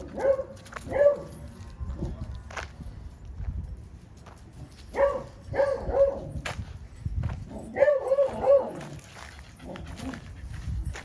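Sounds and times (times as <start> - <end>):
dog barking: 0.1 - 1.3, 4.9 - 6.3, 7.7 - 8.9.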